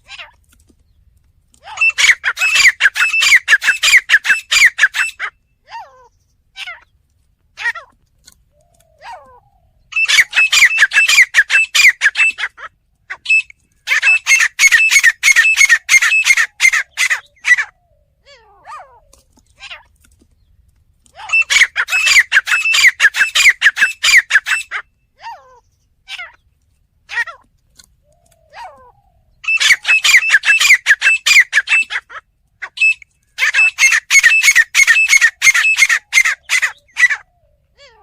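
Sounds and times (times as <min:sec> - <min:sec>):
francolin calling shrill notes: 0:01.8 - 0:05.4, 0:09.9 - 0:12.6, 0:13.2 - 0:17.7, 0:21.3 - 0:24.9, 0:29.4 - 0:37.3.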